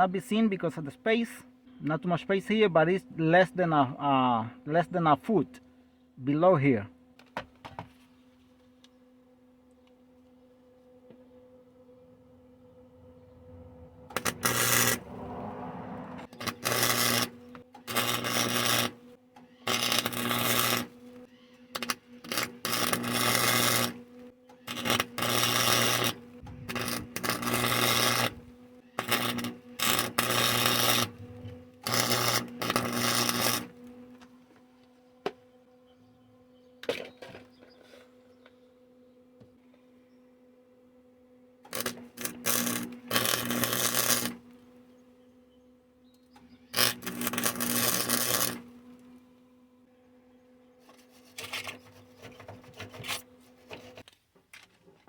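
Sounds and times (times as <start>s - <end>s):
electrical hum: 0.0s - 53.9s
welder arc crackling: 14.0s - 15.5s, 16.1s - 33.9s, 41.7s - 44.6s, 46.7s - 49.1s.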